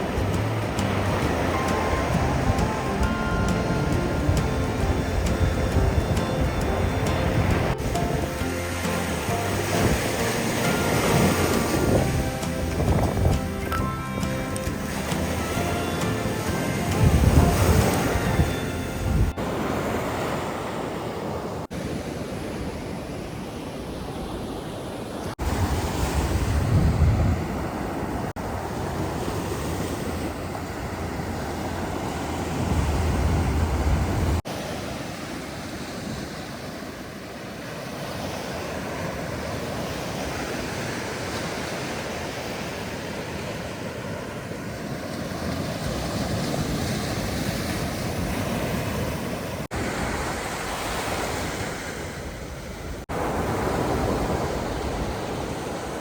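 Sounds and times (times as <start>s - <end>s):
wind rumbling on microphone: 0.0s - 13.7s, 16.4s - 21.6s, 22.3s - 34.4s
ocean surf washing on beach: 0.0s - 56.0s.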